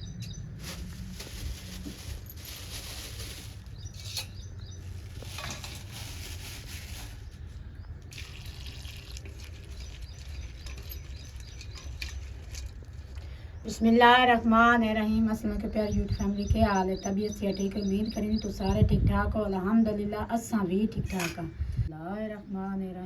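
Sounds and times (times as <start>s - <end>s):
water running and splashing: 8.1s - 10.7s.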